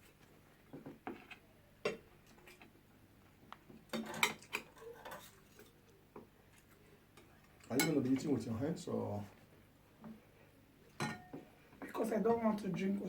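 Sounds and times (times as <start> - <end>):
cutlery clinking on plate: 3.9 - 5.7, 7.6 - 8.3, 11.0 - 11.4.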